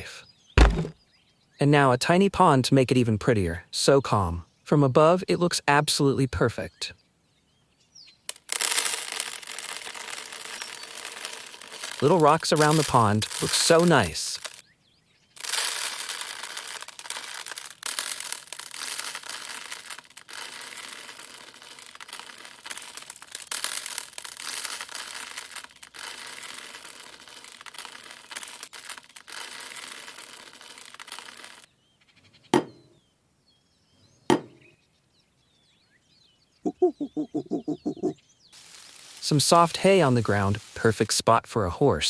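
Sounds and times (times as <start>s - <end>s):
dry rustling and crinkling: 8.4s - 14.6s, 15.4s - 31.7s, 38.6s - 41.2s.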